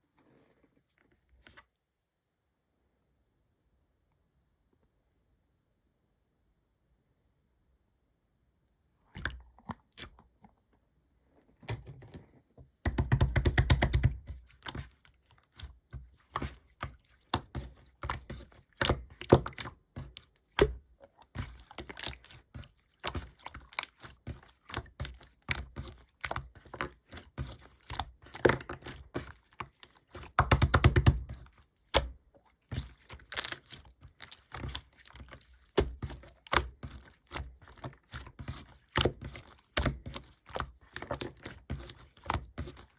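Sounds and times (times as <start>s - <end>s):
small objects clicking and rustling: 33.3s - 35.3s.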